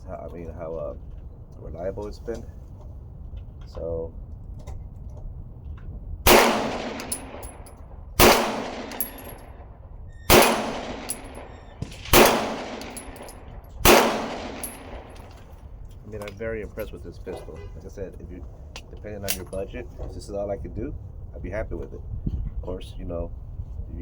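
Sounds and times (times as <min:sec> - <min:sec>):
pistol shots with echo: 0:06.3 - 0:09.4, 0:10.3 - 0:15.4.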